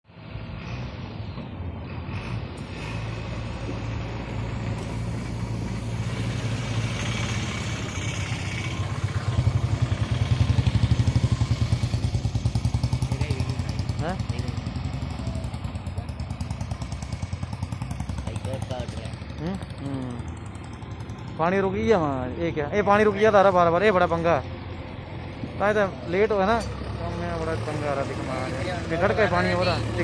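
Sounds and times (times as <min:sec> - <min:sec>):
engine running: 0:00.1 - 0:30.0.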